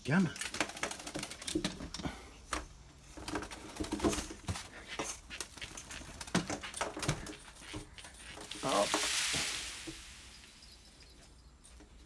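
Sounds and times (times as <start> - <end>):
knocks and rustles: 0.4 - 12.0
bird wings fluttering: 8.3 - 11.3.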